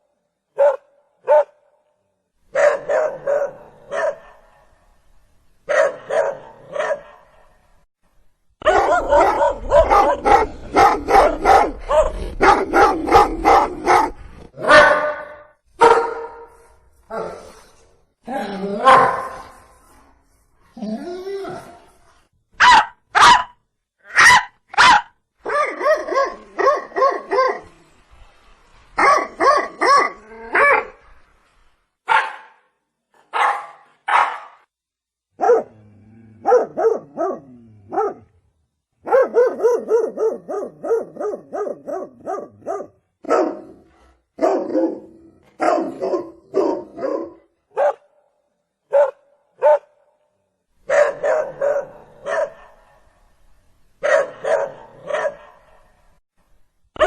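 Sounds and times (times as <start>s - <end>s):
dog barking: 0.5s - 1.8s, 2.5s - 4.7s, 5.7s - 7.6s, 8.6s - 16.6s, 18.8s - 19.5s, 22.6s - 27.7s, 29.0s - 30.9s, 32.1s - 34.7s, 35.4s - 35.8s, 36.4s - 38.3s, 39.0s - 48.2s, 48.9s - 50.1s, 50.8s - 53.1s, 54.0s - 55.9s.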